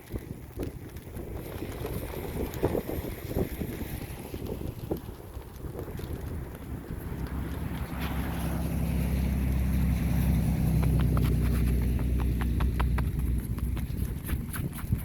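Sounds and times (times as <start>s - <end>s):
wind buffeting microphone: 0.0s - 15.0s
footsteps crunching in snow: 7.4s - 15.0s.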